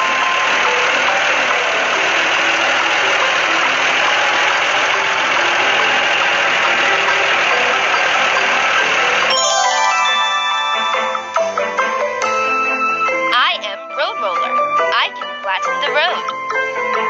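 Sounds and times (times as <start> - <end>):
construction vehicle engine: 0.0 - 17.0
mallet percussion jingle: 6.7 - 17.0.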